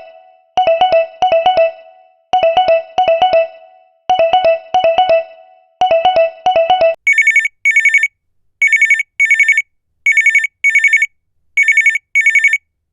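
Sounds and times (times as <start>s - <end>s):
plucked musical notes: 0.0s - 7.0s
telephone ringing: 0.0s - 12.6s.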